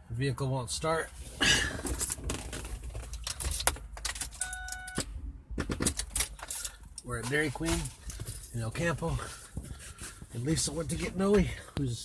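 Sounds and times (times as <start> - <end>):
car keys jangling: 3.0 - 5.1, 5.8 - 8.7
key clicking in ignition: 3.2 - 5.1
electronic dashboard chime: 4.4 - 5.0.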